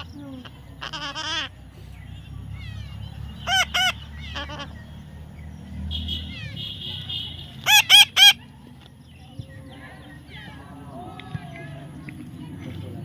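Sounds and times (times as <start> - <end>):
parrot squawking: 0.8 - 1.5, 2.6 - 5.0, 6.2 - 8.4.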